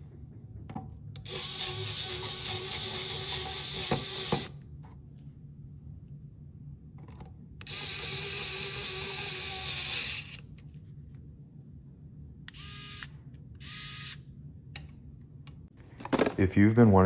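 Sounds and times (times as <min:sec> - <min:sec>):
electric screwdriver motor running: 0:01.3 - 0:04.5, 0:07.6 - 0:10.4, 0:12.5 - 0:14.2.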